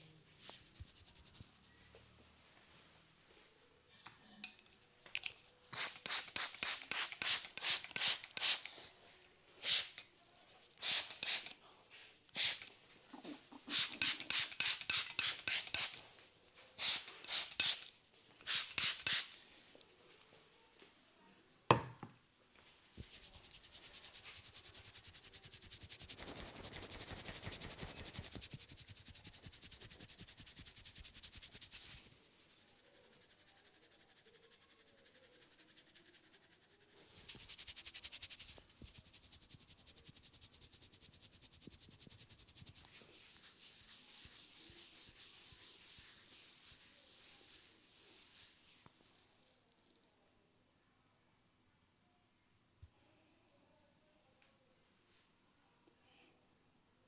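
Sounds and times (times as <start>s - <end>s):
hands rubbing hair and scalp: 0.4s - 1.8s, 5.2s - 8.8s, 9.6s - 20.3s, 22.6s - 50.0s.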